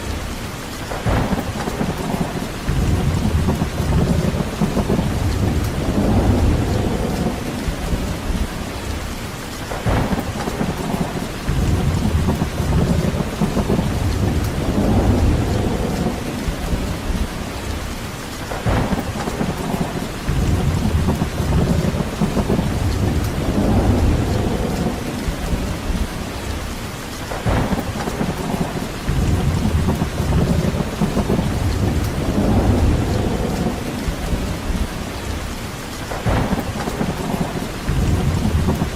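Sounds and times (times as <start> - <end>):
heavy rain: 0.0 - 38.9
low rumble: 2.1 - 9.0, 9.8 - 17.8, 18.6 - 26.6, 27.4 - 35.4.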